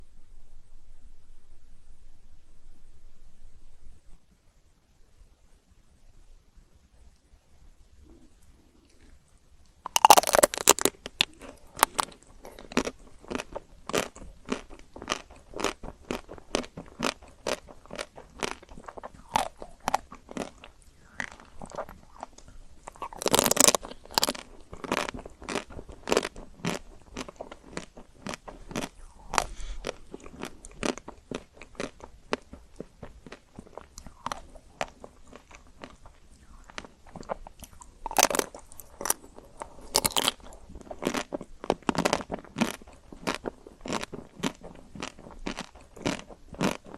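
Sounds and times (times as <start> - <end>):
crunchy chewing of ice cream: 9.8 - 46.9
loud bites: 9.9 - 10.9.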